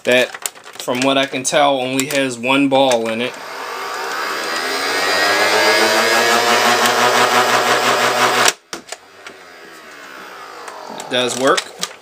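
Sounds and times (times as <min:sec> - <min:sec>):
small electric motor whirring: 0:03.2 - 0:12.0.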